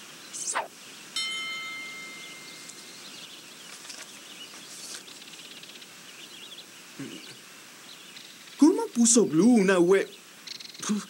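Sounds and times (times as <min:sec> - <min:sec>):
bird chirps: 0:00.2 - 0:09.0, 0:10.0 - 0:10.9
chime-like ring: 0:01.2 - 0:02.9.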